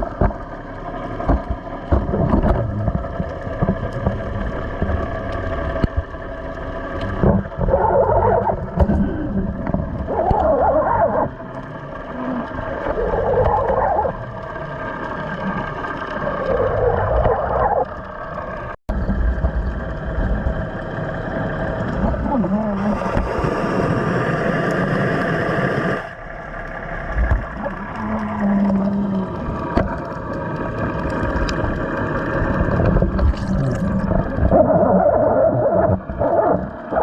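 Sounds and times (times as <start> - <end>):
boat engine running: 0.0 - 37.0
gurgling rush of water: 0.0 - 37.0.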